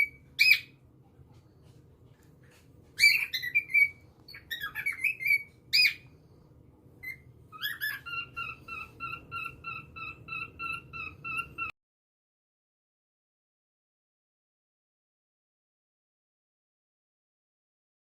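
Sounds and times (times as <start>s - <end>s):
cockatiel chirping: 0.0s - 0.8s, 3.0s - 6.1s, 7.0s - 11.7s.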